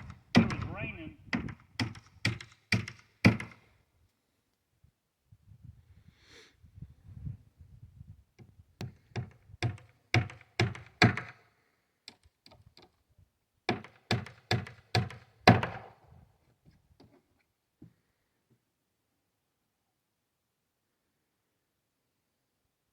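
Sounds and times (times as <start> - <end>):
hammer driving nails into wood: 0.0 - 0.7, 1.3 - 3.6, 8.8 - 11.4, 13.7 - 15.9.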